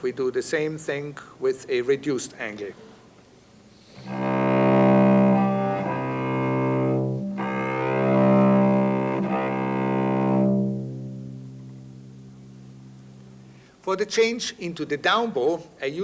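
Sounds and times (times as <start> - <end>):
cello sustained bow strokes: 3.9 - 13.6.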